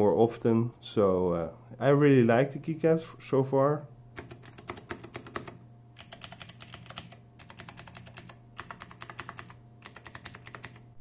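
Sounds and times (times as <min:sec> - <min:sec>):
mechanical keyboard clicking: 0:04.2 - 0:10.9.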